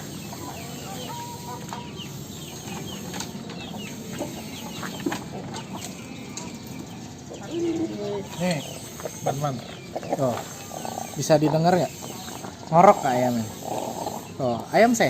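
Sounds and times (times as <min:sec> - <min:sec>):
chicken rattling snore: 0:10.0 - 0:15.0.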